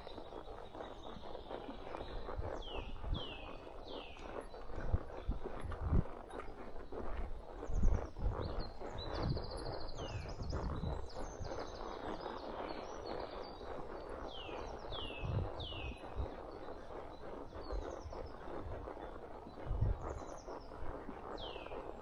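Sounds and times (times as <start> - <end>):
birds chirping: 0.0 - 22.0
horse hooves thudding: 0.0 - 22.0.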